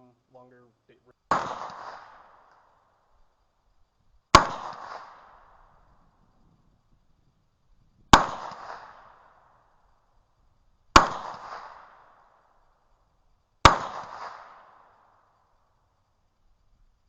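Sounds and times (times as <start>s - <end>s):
pistol shots with echo: 1.3s - 2.7s, 4.3s - 5.8s, 8.1s - 9.6s, 10.9s - 12.5s, 13.6s - 15.1s.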